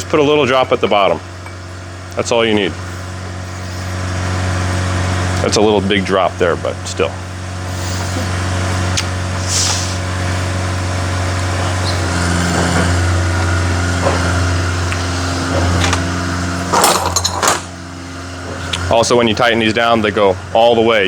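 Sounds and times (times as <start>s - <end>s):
motor humming: 0.0s - 21.0s
metal knocks clattering: 15.4s - 17.8s.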